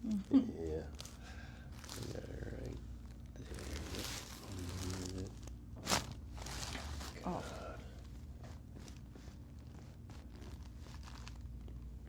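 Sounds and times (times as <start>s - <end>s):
person groaning: 7.2s - 7.8s.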